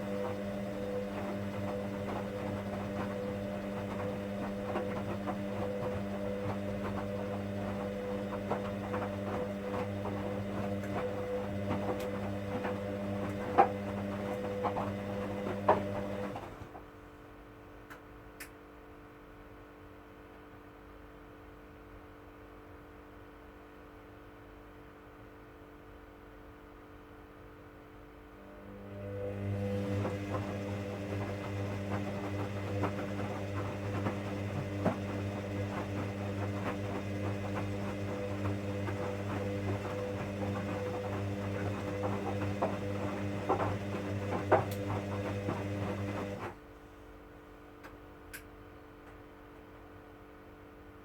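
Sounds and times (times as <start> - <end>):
washing machine motor humming: 0.0 - 16.9, 28.4 - 46.8
faint electrical hum: 46.5 - 51.0.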